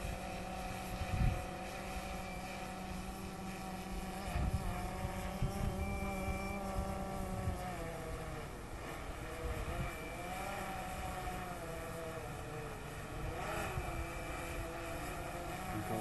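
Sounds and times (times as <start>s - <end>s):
wind buffeting microphone: 0.0s - 10.0s
drone propellers whining: 0.0s - 16.0s.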